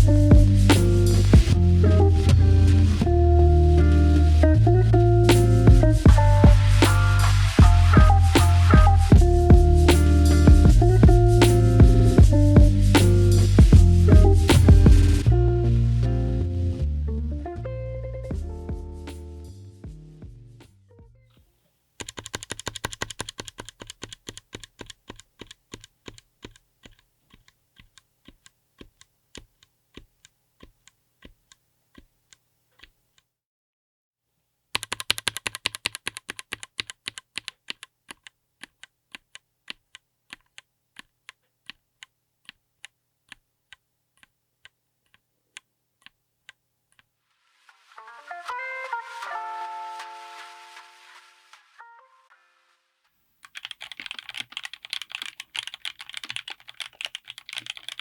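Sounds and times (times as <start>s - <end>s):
mechanical keyboard typing: 22.0s - 32.1s, 34.8s - 41.8s, 53.4s - 58.0s.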